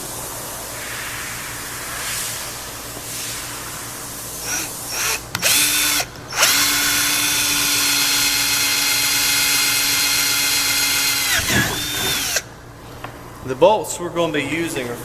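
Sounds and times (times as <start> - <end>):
power drill boring plastic: 4.4 - 12.5.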